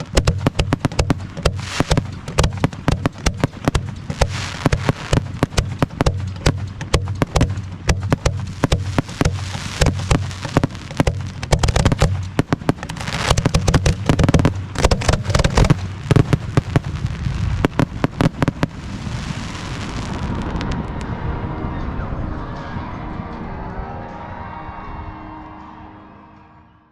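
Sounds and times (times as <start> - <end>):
fireworks bangs and crackles: 0.0 - 21.1.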